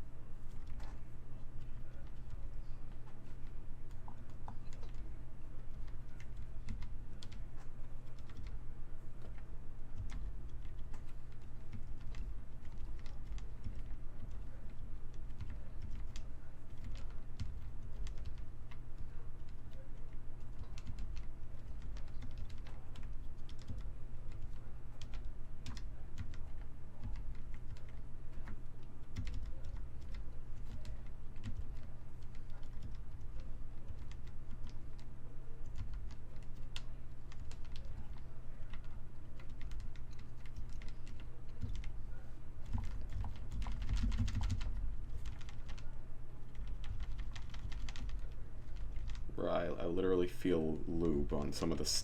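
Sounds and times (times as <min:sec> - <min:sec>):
steady low hum: 0:00.0 - 0:52.0
typing on mechanical keyboard: 0:20.6 - 0:34.8, 0:35.7 - 0:41.9, 0:42.6 - 0:45.9, 0:46.5 - 0:49.2.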